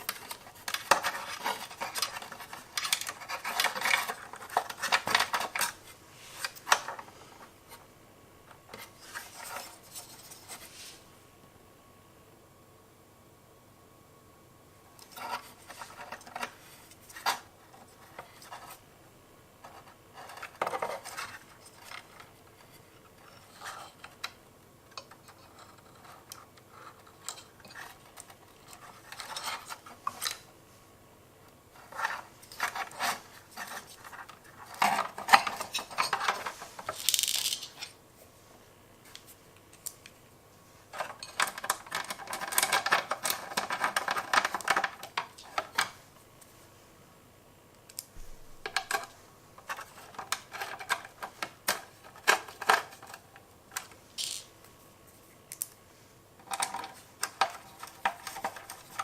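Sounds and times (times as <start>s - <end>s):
metal parts and tools clinking: 34.8s - 37.9s, 54.2s - 54.5s.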